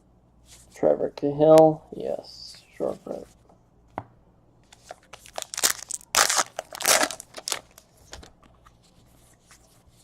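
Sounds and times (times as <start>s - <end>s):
faint handling of cards: 4.6s - 10.0s
wrapper crinkling and tearing: 4.9s - 7.9s.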